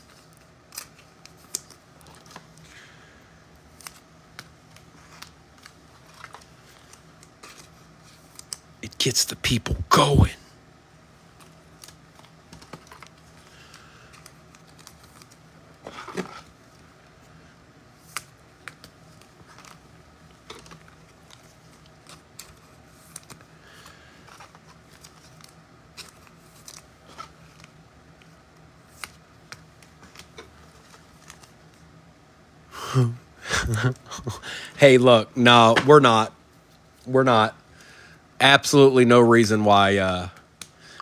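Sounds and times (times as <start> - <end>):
trading cards and wrappers rustling: 0.0 - 2.8, 3.6 - 10.3, 11.3 - 17.4, 18.0 - 31.9.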